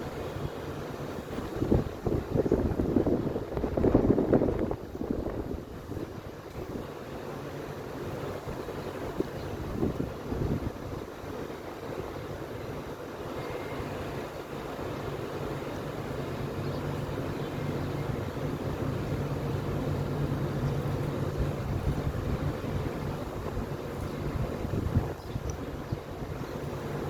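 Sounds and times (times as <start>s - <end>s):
wind buffeting microphone: 1.2s - 6.8s, 8.5s - 11.1s, 16.9s - 27.0s.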